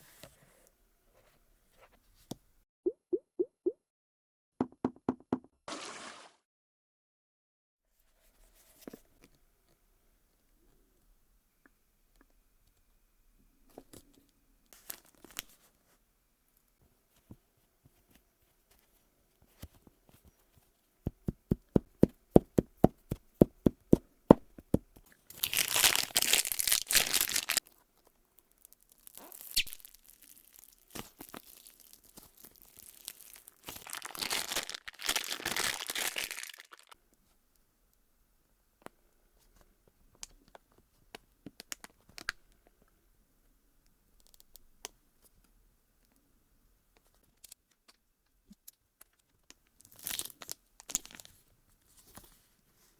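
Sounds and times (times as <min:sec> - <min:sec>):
plastic wrapping torn and crinkled: 0:25.3 - 0:27.8, 0:28.4 - 0:37.0, 0:49.8 - 0:51.3.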